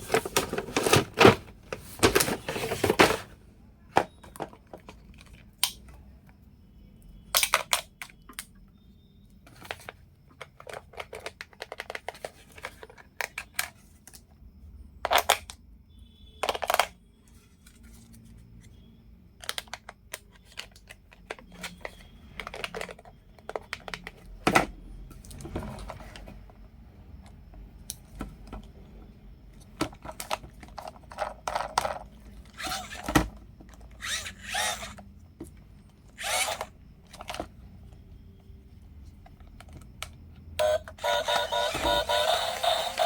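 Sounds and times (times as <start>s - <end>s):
toy car motor whirring: 32.6s - 33.0s, 34.0s - 35.0s, 36.1s - 36.7s, 40.6s - 43.0s.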